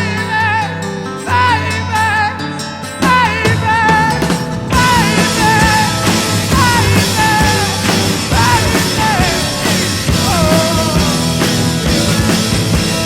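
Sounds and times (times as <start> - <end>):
rock music: 0.0 - 13.0
sliding lead melody: 0.0 - 13.0
steady drum beat: 3.0 - 13.0.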